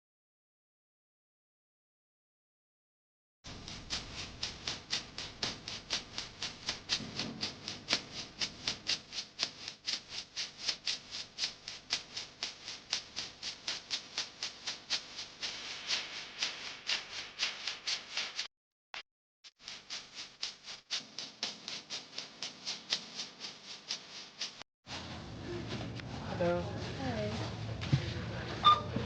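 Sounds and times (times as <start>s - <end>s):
background music with shaker rhythm: 3.5s - 18.5s, 19.6s - 25.1s.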